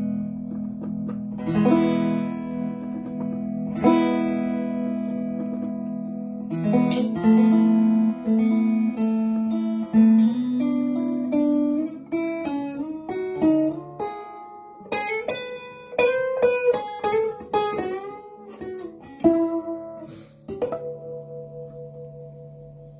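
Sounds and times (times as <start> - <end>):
acoustic guitar plucked and strummed: 0.0 - 22.9.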